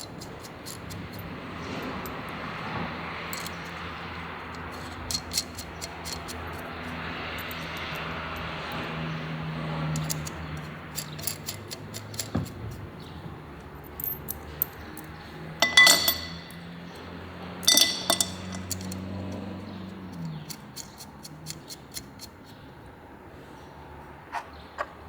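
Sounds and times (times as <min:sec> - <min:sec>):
metal parts and tools clinking: 0:03.2 - 0:06.6, 0:07.3 - 0:08.5, 0:09.9 - 0:12.8, 0:13.6 - 0:19.4.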